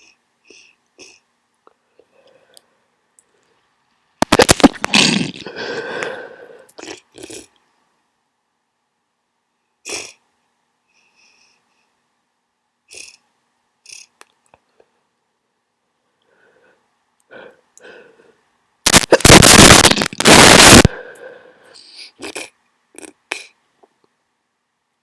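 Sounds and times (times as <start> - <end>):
wet nose blast: 4.2 - 5.8, 18.9 - 21.0
person sniffling: 4.9 - 6.7.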